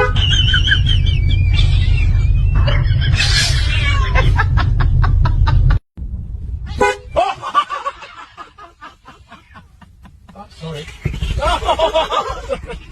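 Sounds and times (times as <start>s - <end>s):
short honk: 0.0s - 0.3s, 6.7s - 7.2s
low rumble: 0.0s - 12.9s
people giggling: 0.1s - 5.8s, 7.2s - 12.9s
people laughing: 0.1s - 5.8s, 7.2s - 12.9s.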